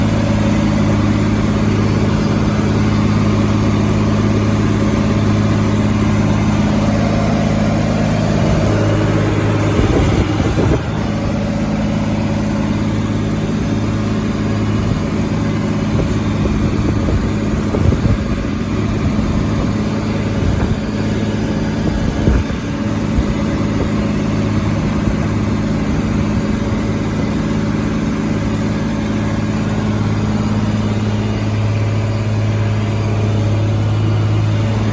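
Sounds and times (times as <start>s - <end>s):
tractor diesel engine under load: 0.0s - 34.9s.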